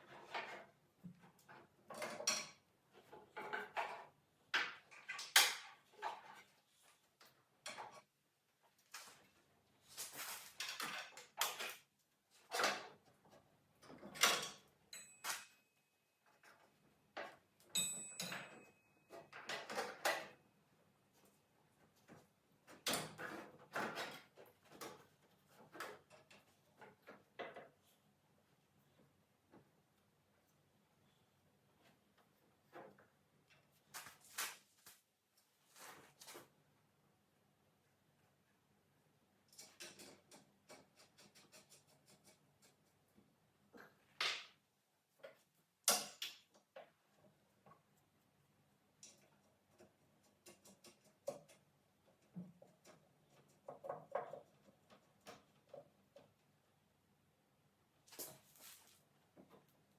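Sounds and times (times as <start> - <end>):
metal tools clinking: 17.7 - 19.3.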